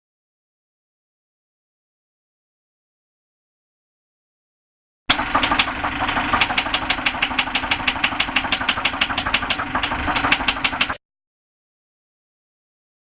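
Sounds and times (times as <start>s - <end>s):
car engine with rod knock: 5.1s - 11.0s.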